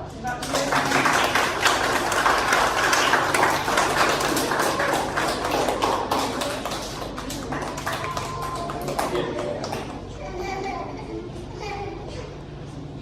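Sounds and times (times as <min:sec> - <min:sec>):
audience applauding: 0:00.2 - 0:10.1.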